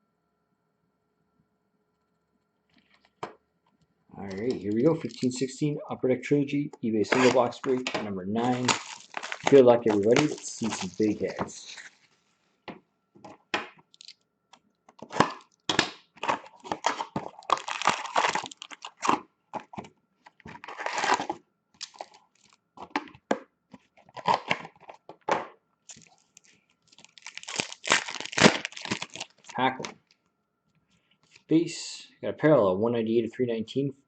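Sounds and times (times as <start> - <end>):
cardboard crackling: 4.3 - 5.4, 7.0 - 12.4, 14.9 - 23.2, 23.8 - 30.0
plastic crinkling: 4.3 - 5.4, 7.0 - 12.4, 13.9 - 14.2, 14.9 - 23.2, 23.8 - 25.2, 25.9 - 30.2
wrappers tearing: 4.3 - 5.4, 7.0 - 12.2, 13.9 - 14.2, 15.0 - 19.7, 20.4 - 23.0, 24.0 - 25.0, 25.9 - 30.0.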